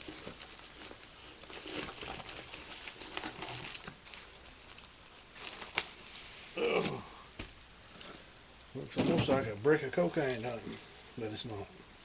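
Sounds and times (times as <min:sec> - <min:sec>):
plastic packaging crinkling: 0:00.0 - 0:08.3.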